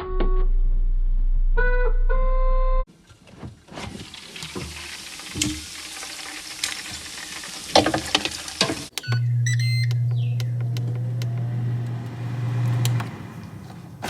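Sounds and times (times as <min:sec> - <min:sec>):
food sizzling and crackling: 0:04.1 - 0:08.9
short electronic beeps: 0:09.0 - 0:10.5
low electric hum: 0:09.0 - 0:13.1.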